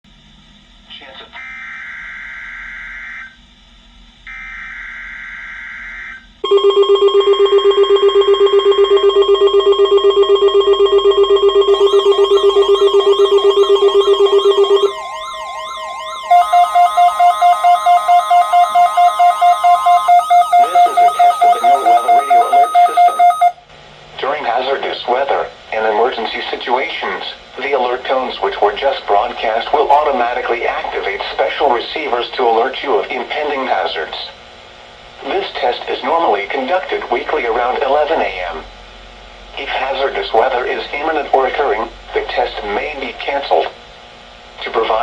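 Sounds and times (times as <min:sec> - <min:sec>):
pulsing alarm tones: 0:06.4 - 0:23.6
warbling siren-like sweeps: 0:11.5 - 0:23.6
screech of coded data: 0:11.7 - 0:23.6.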